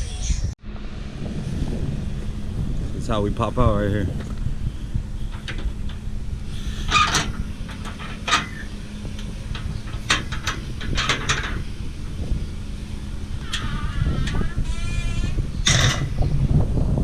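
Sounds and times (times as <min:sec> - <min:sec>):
vehicle engine rumbling: 0:00.0 - 0:17.0
sharp knocks and rattles: 0:05.2 - 0:12.4, 0:13.4 - 0:16.4.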